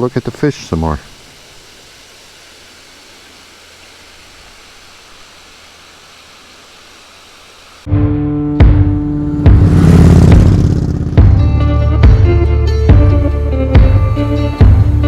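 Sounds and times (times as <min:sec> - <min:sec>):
steady hiss: 0:00.0 - 0:07.9.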